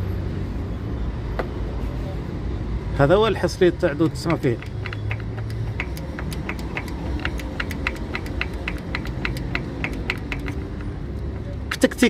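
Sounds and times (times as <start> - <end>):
car engine hum: 2.7 - 12.0
rapid timing chain ticking: 4.0 - 11.1.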